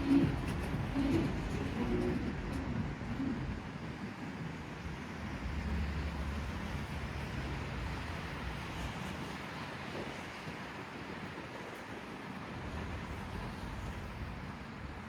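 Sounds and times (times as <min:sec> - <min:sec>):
low city rumble: 0:00.0 - 0:15.0.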